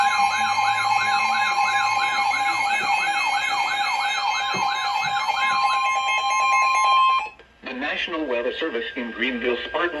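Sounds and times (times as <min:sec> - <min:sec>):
fast warbling siren sweep: 0:00.0 - 0:07.3
steady two-note alarm tone: 0:00.0 - 0:07.3.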